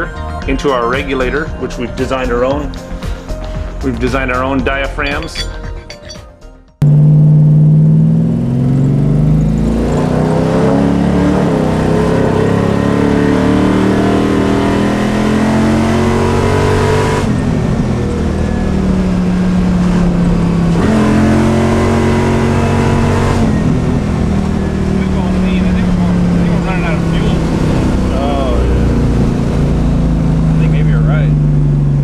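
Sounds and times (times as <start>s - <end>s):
car engine accelerating hard: 6.8s - 32.0s.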